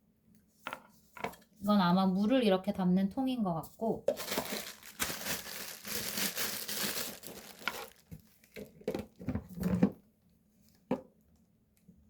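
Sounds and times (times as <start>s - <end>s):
packaging crinkling: 4.2s - 8.8s.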